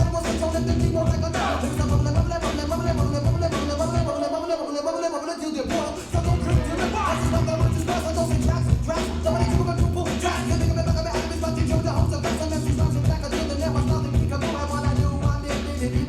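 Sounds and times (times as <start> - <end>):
music with heavy bass line and beat: 0.0 - 4.3, 5.6 - 16.0.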